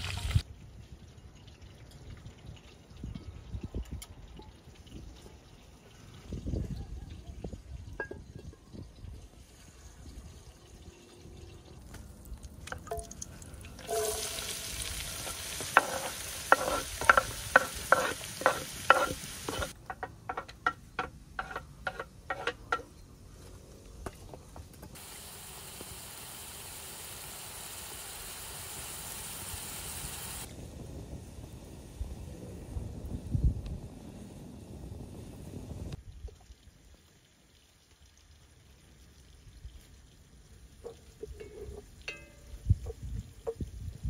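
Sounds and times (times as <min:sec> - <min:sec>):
food sizzling in a pan: 0:13.8 - 0:22.7, 0:25.0 - 0:32.1
utensil knocking and scraping pan: 0:13.9 - 0:22.9.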